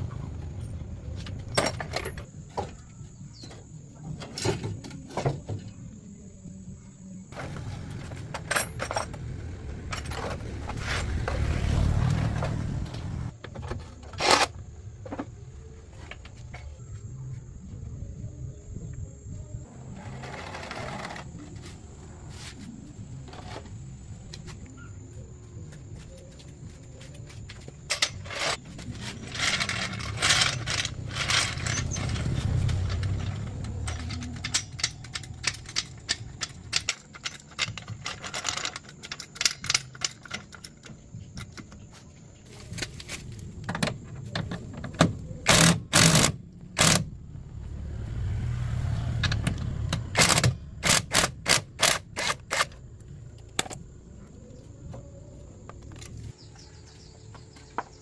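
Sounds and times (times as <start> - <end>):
low rumble: 6.1 - 13.3, 28.8 - 36.6, 46.6 - 50.8.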